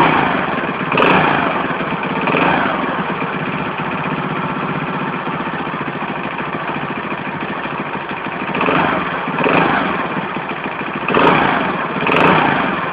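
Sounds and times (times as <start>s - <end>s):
engine knock: 0.0s - 12.9s
moped engine idling and revving: 0.0s - 12.9s.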